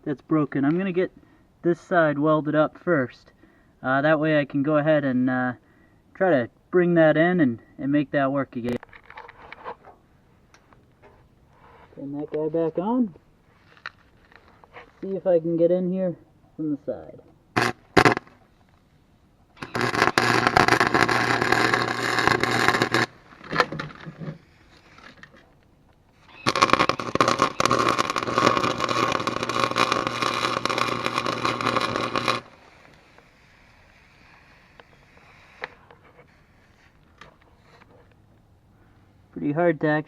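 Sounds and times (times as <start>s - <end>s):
arc welder crackling sizzle: 17.5s - 18.8s, 19.5s - 37.7s.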